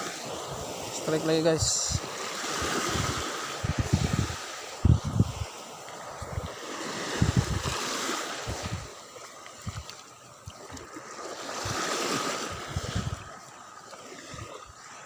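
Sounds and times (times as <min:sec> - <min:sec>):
sea waves: 0:00.0 - 0:15.0
wind buffeting microphone: 0:01.6 - 0:09.0, 0:09.6 - 0:10.0, 0:11.6 - 0:13.4.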